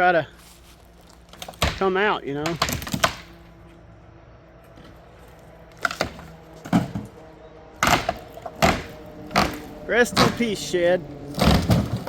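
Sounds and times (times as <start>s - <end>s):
wood cracking: 1.0s - 3.5s, 4.7s - 7.2s, 7.8s - 12.0s.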